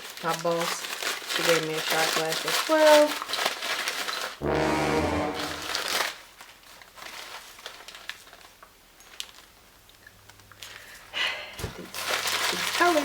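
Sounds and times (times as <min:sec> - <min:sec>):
packaging crinkling and rustling: 0:00.0 - 0:04.4, 0:06.4 - 0:09.5, 0:11.6 - 0:13.0
short pitched musical sound: 0:04.4 - 0:05.9.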